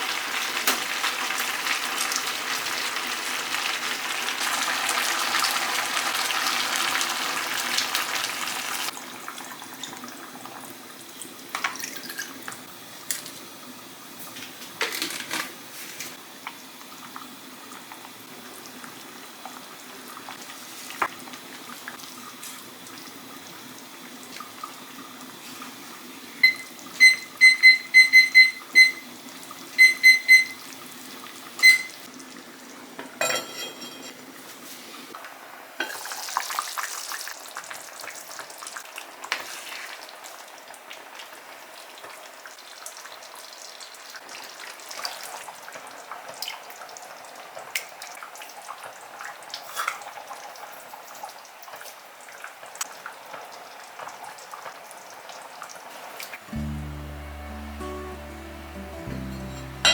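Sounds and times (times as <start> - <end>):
kitchen tap water running: 0.0 - 15.6
short electronic beeps: 26.4 - 29.1, 29.8 - 30.6, 31.6 - 32.0.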